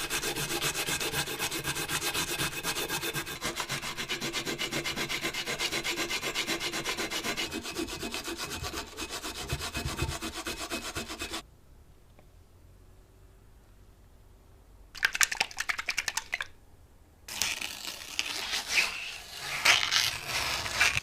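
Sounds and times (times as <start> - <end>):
sanding metal plate: 0.0 - 11.4.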